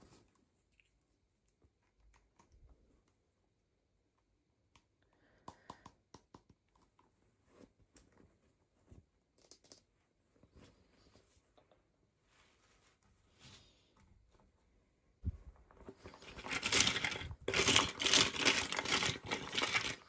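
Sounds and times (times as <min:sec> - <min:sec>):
plastic packaging clicks and crinkles: 0:15.9 - 0:20.0.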